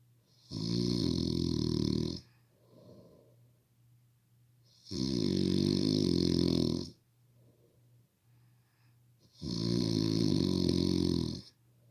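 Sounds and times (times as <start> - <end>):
loud snoring: 0.4 - 2.3, 4.8 - 7.0, 9.3 - 11.5.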